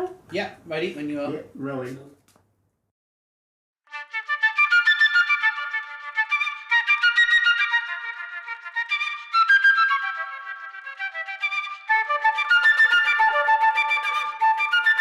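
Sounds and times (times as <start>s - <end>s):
flute playing fast high runs: 3.9s - 15.0s.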